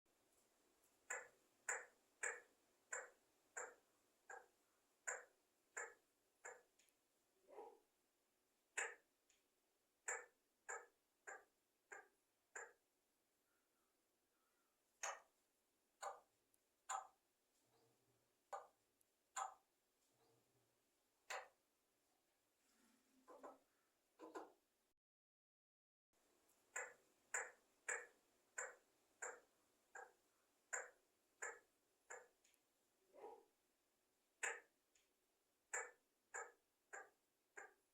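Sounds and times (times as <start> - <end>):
parrot clicking calls: 1.1 - 6.9, 8.8 - 9.1, 10.0 - 12.8, 16.0 - 16.3, 26.7 - 32.4, 34.4 - 34.7, 35.7 - 37.8.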